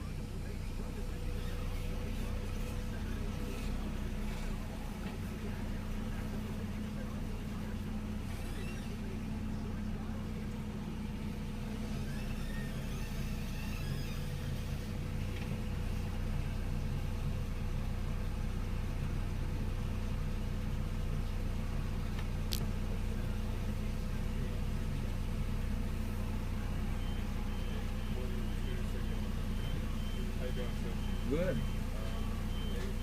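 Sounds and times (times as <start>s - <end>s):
car engine idling: 0.0s - 33.0s
faint repeated beeping: 25.9s - 33.0s.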